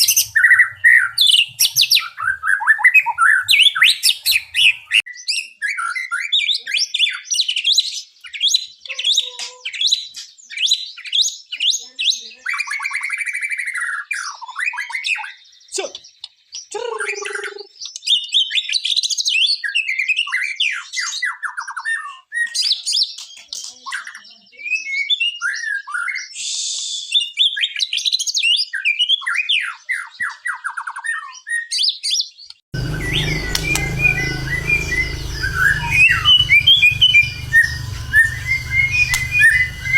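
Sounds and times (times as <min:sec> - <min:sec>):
songbird singing: 0:00.0 - 0:08.9, 0:32.8 - 0:39.9
steady low hum: 0:32.8 - 0:39.9.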